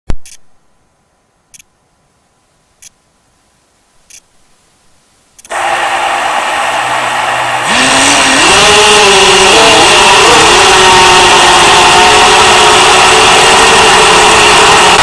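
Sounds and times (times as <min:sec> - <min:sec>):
quadcopter motors buzzing: 0:05.4 - 0:15.0.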